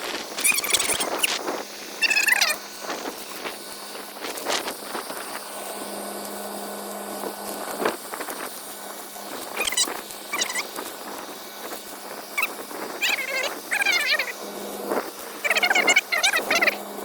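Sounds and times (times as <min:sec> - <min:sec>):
wavering animal calls: 0:09.6 - 0:10.6, 0:12.4 - 0:14.5, 0:15.3 - 0:16.8.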